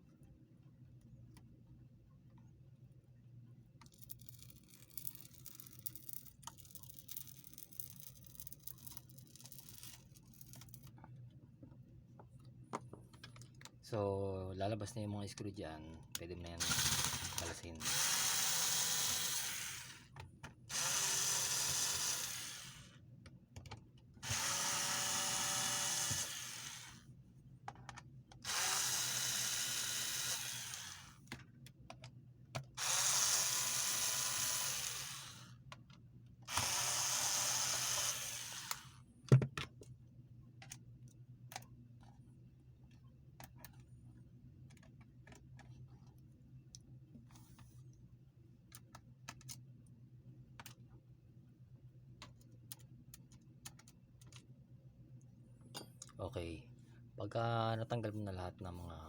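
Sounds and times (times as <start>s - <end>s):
electric screwdriver running: 16.6s - 20.1s, 20.7s - 22.9s, 24.2s - 27.0s, 28.4s - 31.2s, 32.8s - 35.5s, 36.5s - 39.0s.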